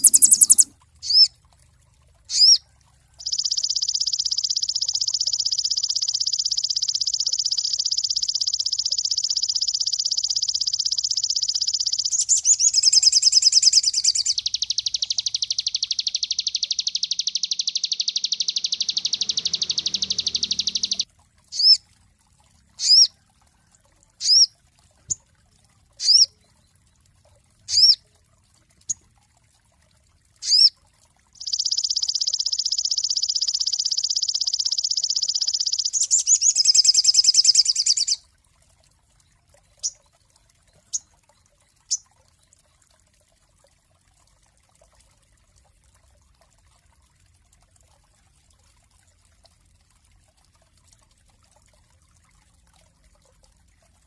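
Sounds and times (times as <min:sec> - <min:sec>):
bird buzzing trill: 0:00.0 - 0:01.3, 0:11.3 - 0:21.0
bird whistled notes: 0:00.0 - 0:01.3, 0:03.2 - 0:21.0, 0:31.4 - 0:38.2.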